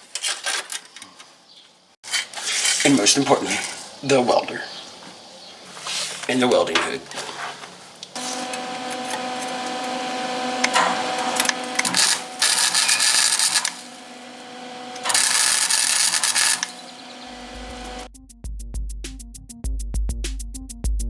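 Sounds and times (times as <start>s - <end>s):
welder crackling sizzle: 7.4s - 18.1s.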